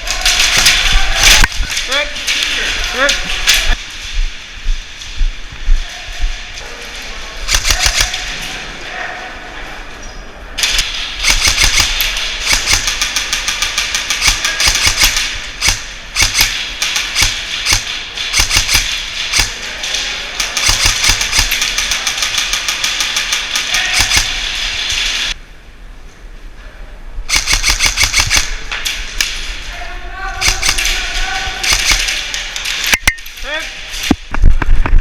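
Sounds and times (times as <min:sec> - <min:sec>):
airsoft guns firing bursts: 0:07.5 - 0:08.3, 0:10.6 - 0:19.6, 0:20.4 - 0:25.1, 0:27.3 - 0:28.6, 0:30.4 - 0:33.0.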